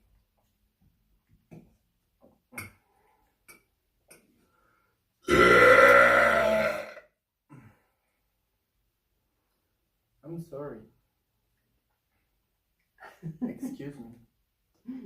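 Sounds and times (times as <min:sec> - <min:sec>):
person burping: 0:05.2 - 0:07.7.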